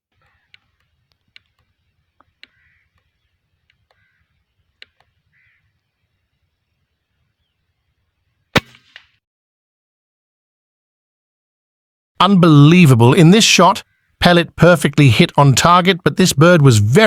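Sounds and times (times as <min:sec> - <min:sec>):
faint clicks: 0:00.1 - 0:05.9
air rifle shot: 0:08.5 - 0:09.2
pellet striking bird: 0:08.6 - 0:09.2.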